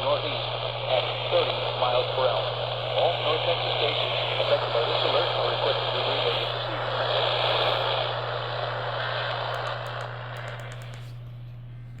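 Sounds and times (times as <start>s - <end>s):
radio static hiss: 0.0s - 11.2s
low hum: 0.0s - 12.0s
faint clicks: 9.5s - 11.2s.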